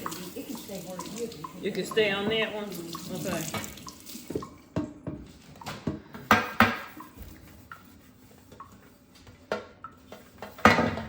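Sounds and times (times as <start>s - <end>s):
kitchenware clattering: 0.0s - 7.2s, 9.4s - 11.0s.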